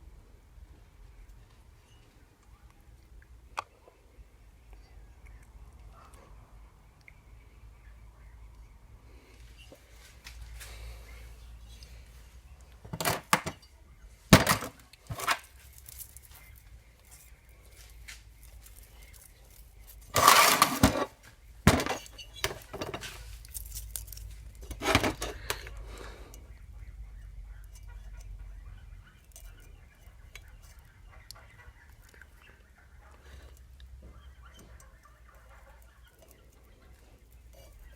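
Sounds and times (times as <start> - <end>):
metal parts rattling: 14.3 - 16.4, 18.6 - 21.1, 21.7 - 25.7
metal tools clinking: 18.8 - 21.1.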